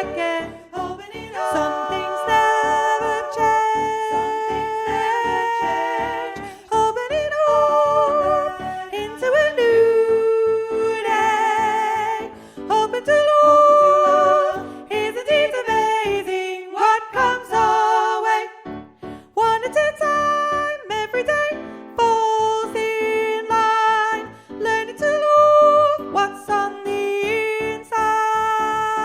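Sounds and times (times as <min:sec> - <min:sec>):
choir singing with vibrato: 0:00.0 - 0:12.5, 0:13.1 - 0:18.6
rhythmic accompaniment: 0:00.0 - 0:14.0.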